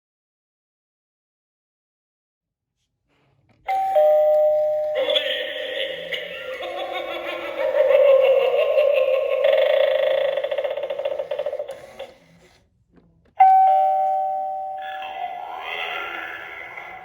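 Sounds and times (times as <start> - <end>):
electronic ding-dong chime: 3.7 - 5.2, 13.4 - 15.4.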